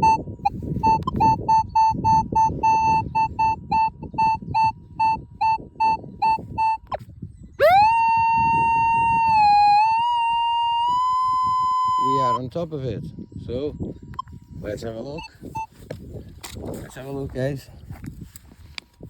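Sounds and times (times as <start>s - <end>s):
metal detector beeping tone: 0.0s - 7.0s, 7.6s - 12.4s, 14.1s - 15.8s
rustling and handling noise: 15.7s - 19.0s.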